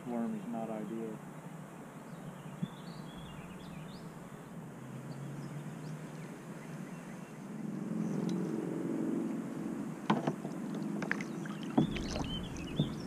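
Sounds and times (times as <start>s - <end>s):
motor engine humming: 10.1s - 13.0s.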